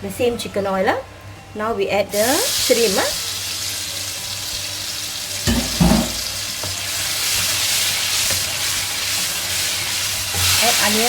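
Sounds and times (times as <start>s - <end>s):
paste sizzling in hot oil: 2.2s - 11.0s
spatula knocking on pan: 5.5s - 6.8s.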